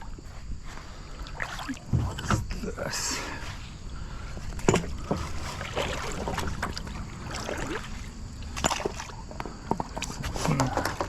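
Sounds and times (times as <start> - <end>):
river water splashing: 0.9 - 11.0
knocks and clunks: 1.9 - 2.6, 4.4 - 7.0, 8.5 - 11.0.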